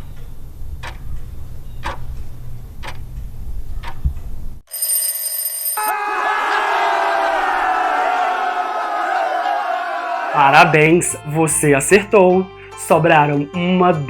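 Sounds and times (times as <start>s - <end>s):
clock ticking: 0.8s - 1.0s, 1.8s - 2.0s
short high alarm ring: 4.7s - 5.9s
crowd cheering: 5.8s - 11.2s.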